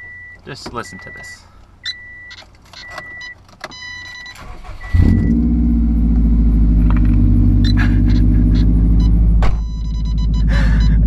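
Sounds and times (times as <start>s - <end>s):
car engine starting: 2.1s - 11.0s
loud car engine idling: 5.9s - 11.0s.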